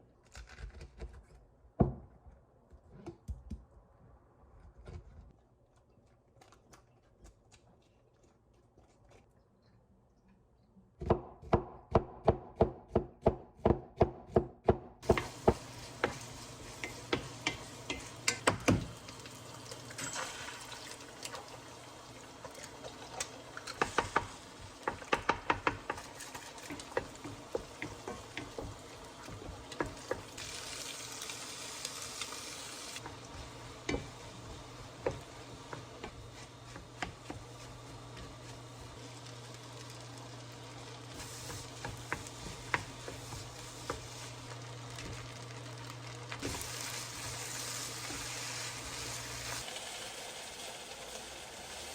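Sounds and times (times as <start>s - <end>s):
knife chopping on cutting board: 11.0s - 16.3s
food sizzling in a pan: 15.0s - 51.9s
utensil tapping and scraping: 23.7s - 30.3s, 41.4s - 44.1s.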